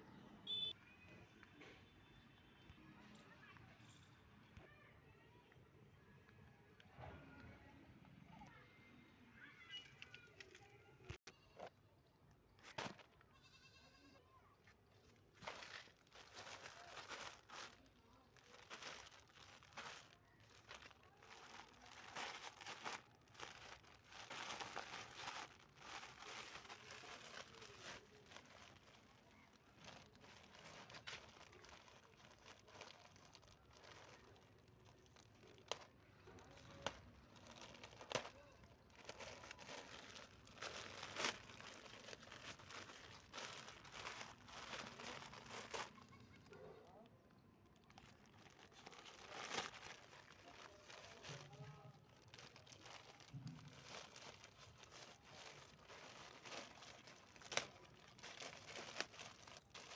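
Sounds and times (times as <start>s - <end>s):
parcel packaging crinkling and tearing: 12.5s - 13.2s, 14.9s - 59.9s.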